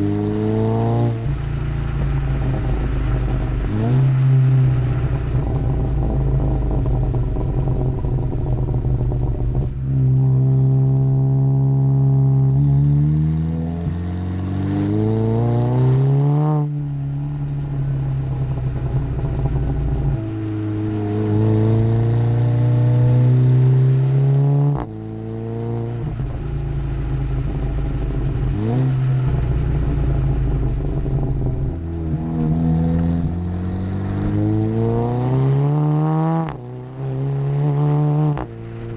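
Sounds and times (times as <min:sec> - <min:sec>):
car engine accelerating hard: 0:00.0 - 0:38.9
engine rev blip: 0:18.4 - 0:38.9.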